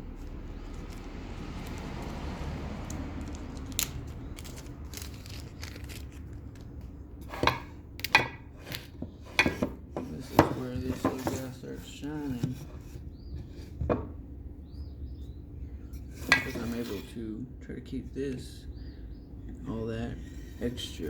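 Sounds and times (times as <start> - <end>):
plastic packet rustling: 0.1 - 6.8.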